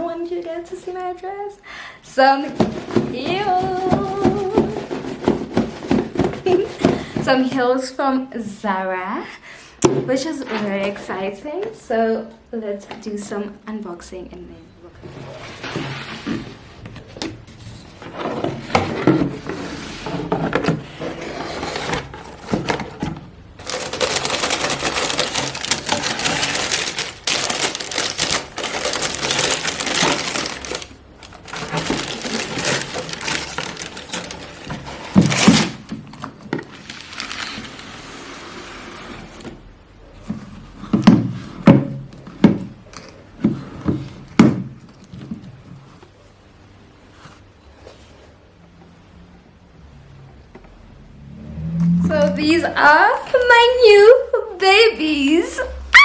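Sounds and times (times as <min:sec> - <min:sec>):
box knocks and thumps: 0:02.4 - 0:07.6
packaging rustling: 0:15.0 - 0:38.1.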